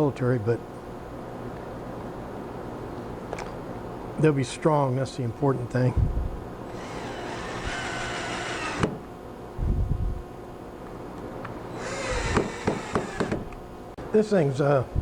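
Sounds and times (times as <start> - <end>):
power drill driving screws: 6.7 - 9.0, 11.7 - 13.5.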